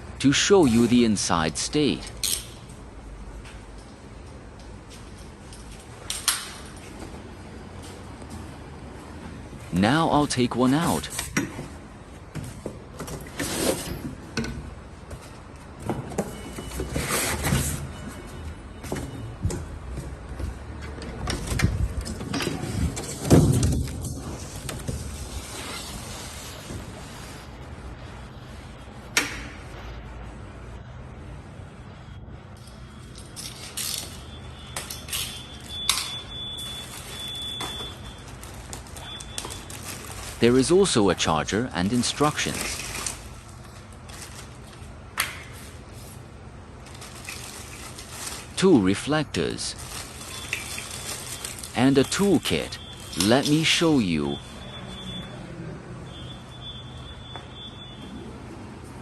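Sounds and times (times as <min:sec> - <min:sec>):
packaging scraping and rustling: 0:36.7 - 0:41.0, 0:41.9 - 0:44.8, 0:46.8 - 0:48.6, 0:49.7 - 0:52.2.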